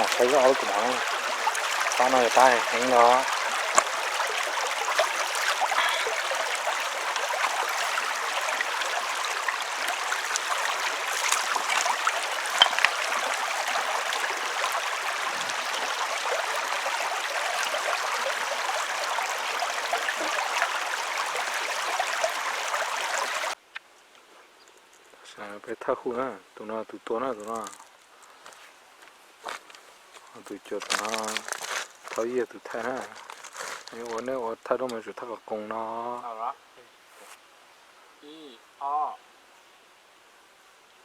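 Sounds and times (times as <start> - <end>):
stream water flowing: 0.0 - 23.6, 30.5 - 34.8.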